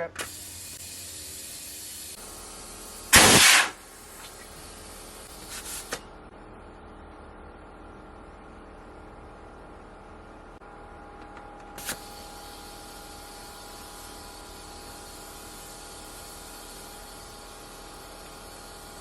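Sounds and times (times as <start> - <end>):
compressed air hissing: 0.2 - 6.0
loud air blast into tire: 3.1 - 4.4.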